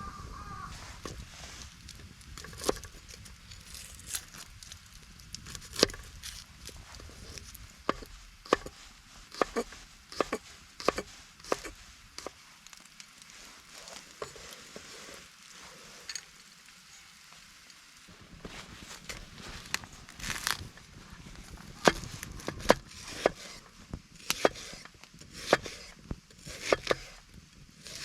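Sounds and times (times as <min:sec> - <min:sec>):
knife chopping vegetables: 0:07.9 - 0:12.3, 0:25.4 - 0:27.1.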